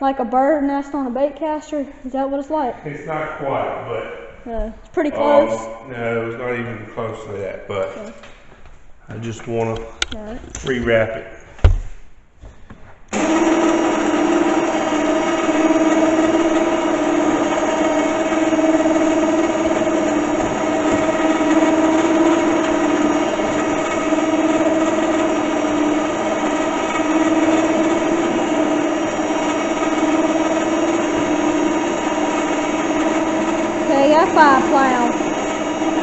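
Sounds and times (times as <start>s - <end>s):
electric winch motor whining: 13.1s - 36.0s.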